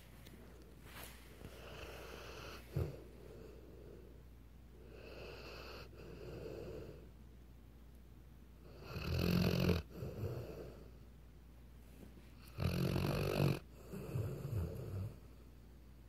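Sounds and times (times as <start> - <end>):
dog snoring: 1.5 - 4.0, 4.8 - 7.1, 8.6 - 10.9, 12.4 - 15.3.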